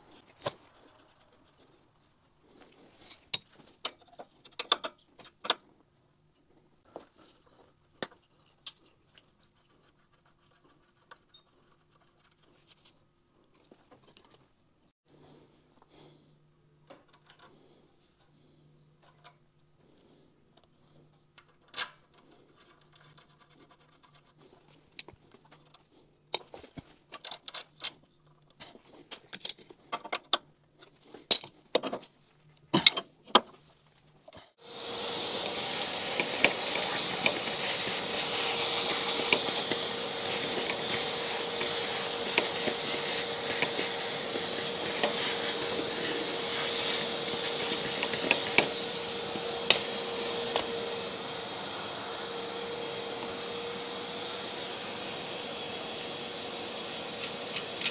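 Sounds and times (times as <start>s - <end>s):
metal parts clicking and knocking: 27.1s - 28.5s, 29.1s - 30.4s
loud whining machine: 34.6s - 57.9s.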